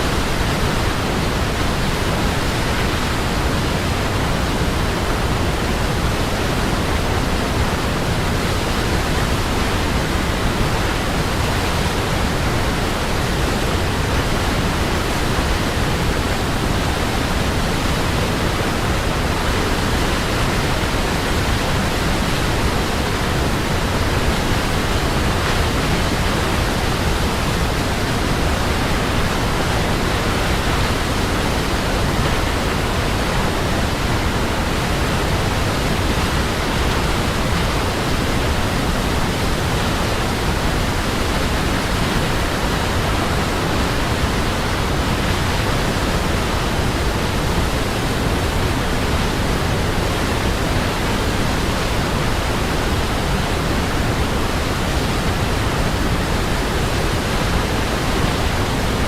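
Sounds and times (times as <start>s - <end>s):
waterfall rushing: 0.0s - 59.0s.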